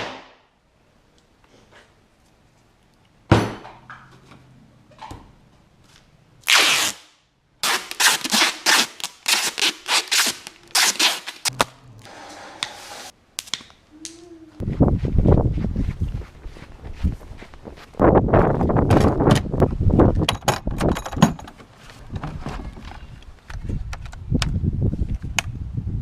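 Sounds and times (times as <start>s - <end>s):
nail gun shot: 0.0s - 0.4s.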